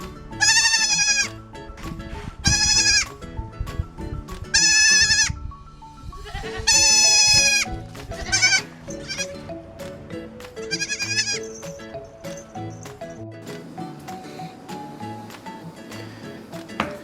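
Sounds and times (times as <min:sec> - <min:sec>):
background music: 0:00.0 - 0:17.0
farm animal bleating: 0:00.4 - 0:01.4, 0:02.4 - 0:03.1, 0:04.5 - 0:05.4, 0:06.2 - 0:09.5, 0:10.6 - 0:11.6.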